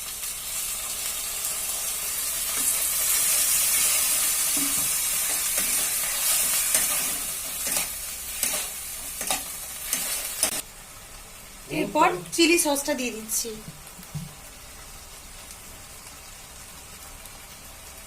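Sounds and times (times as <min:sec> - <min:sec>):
vegetables sizzling in oil: 0:00.0 - 0:18.0.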